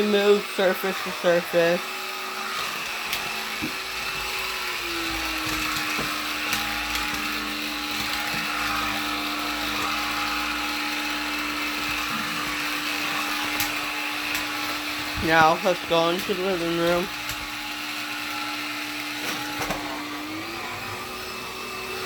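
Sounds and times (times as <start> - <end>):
vacuum cleaner running: 0.0 - 22.0.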